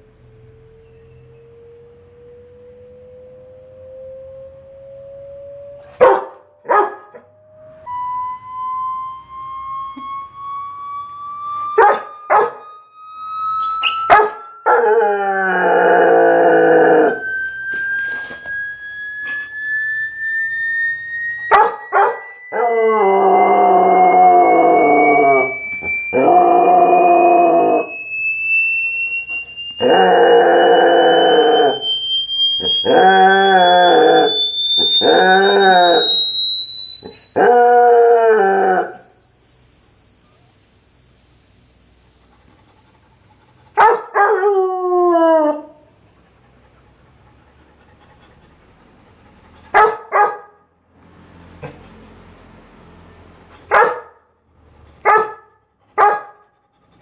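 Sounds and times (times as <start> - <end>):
rising hearing-test tone: 0.0 - 57.0
dog yipping: 6.0 - 7.2, 11.8 - 12.6, 13.8 - 14.4, 21.5 - 22.2, 43.8 - 44.4, 49.8 - 50.5, 53.7 - 54.2, 55.0 - 55.4, 56.0 - 56.4
dog whining: 11.7 - 12.7, 13.6 - 17.2, 21.5 - 28.0, 29.3 - 36.2, 43.8 - 45.7, 49.8 - 50.5, 53.5 - 54.1, 55.0 - 55.4, 56.0 - 56.3
dog howling: 11.8 - 12.7, 13.6 - 17.3, 21.5 - 28.0, 29.8 - 32.0, 32.6 - 36.2, 37.3 - 39.1, 43.8 - 45.7, 49.8 - 50.5, 53.7 - 54.1, 55.1 - 55.4.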